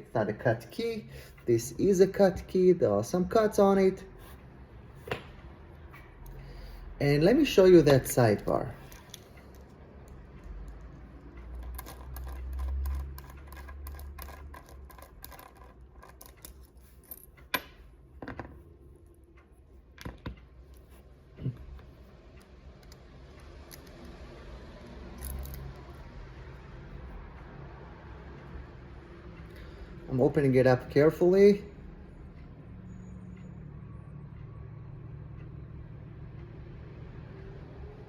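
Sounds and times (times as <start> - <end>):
metal lock clicks and scrapes: 11.6 - 17.8.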